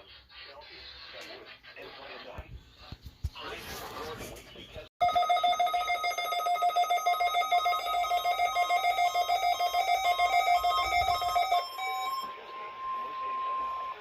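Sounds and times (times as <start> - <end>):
rapid trilling electronic alarm beep: 5.0 - 14.0
steady warning alarm tone: 5.0 - 14.0.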